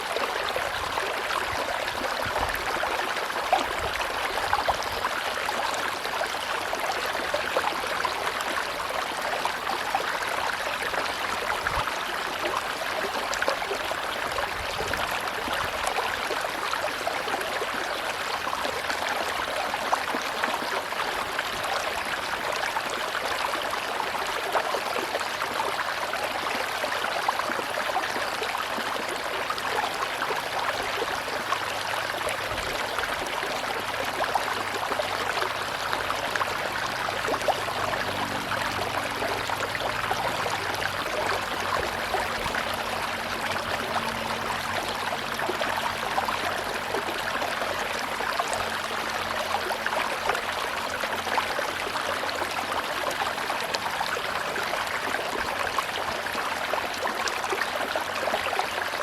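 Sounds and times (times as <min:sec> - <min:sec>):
river water rushing: 0:00.0 - 0:59.0
small water splashes: 0:00.0 - 0:59.0.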